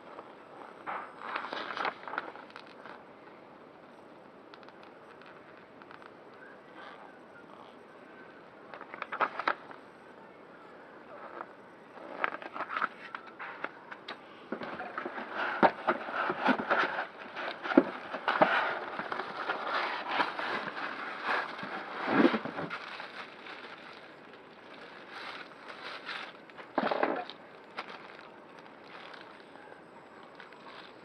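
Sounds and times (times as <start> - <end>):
packaging rustling and clicking: 11.3 - 29.5.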